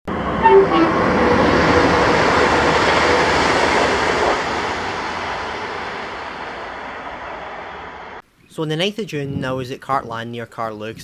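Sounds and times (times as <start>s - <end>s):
train passing: 0.1s - 8.2s.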